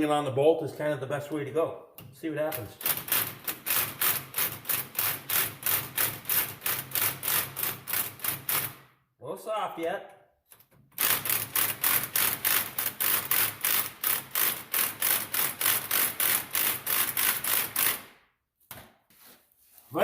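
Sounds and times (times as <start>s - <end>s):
impact wrench hammering: 2.0s - 8.9s, 10.9s - 18.2s.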